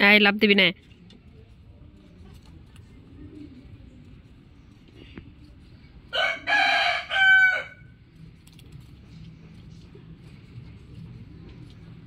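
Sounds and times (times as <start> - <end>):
rooster crowing: 6.1 - 7.9.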